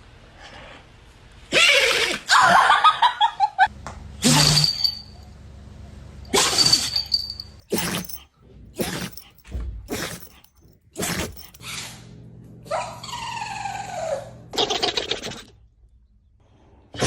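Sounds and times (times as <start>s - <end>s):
dog sneezing: 7.7s - 8.2s, 8.8s - 10.4s, 11.0s - 11.8s.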